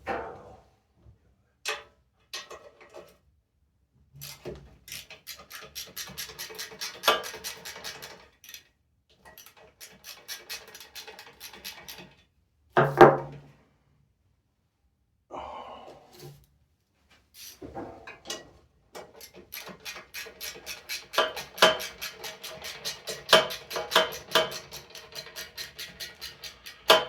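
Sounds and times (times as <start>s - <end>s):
socket ratchet clicking: 4.2s - 8.6s, 9.4s - 12.1s, 19.1s - 27.0s.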